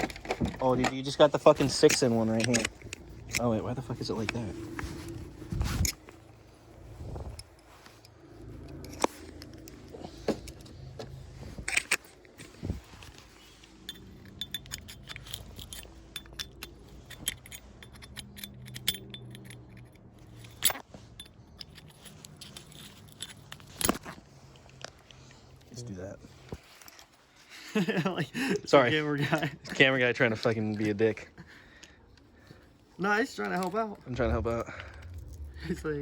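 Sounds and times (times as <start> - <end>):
screwdriver clicking and scraping metal: 0.0 - 6.2, 11.6 - 25.1.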